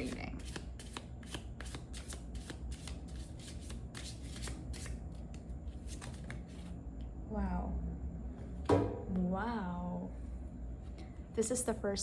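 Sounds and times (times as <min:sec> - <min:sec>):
cards being shuffled: 0:00.0 - 0:06.7.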